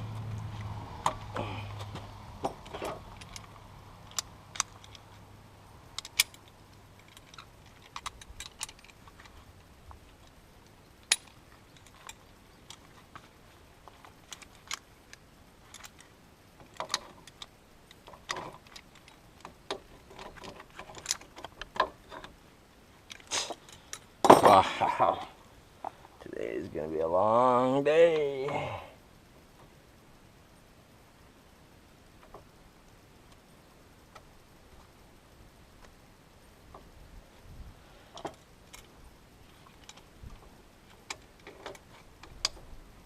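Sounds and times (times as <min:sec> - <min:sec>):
low steady hum: 0:00.0 - 0:43.0.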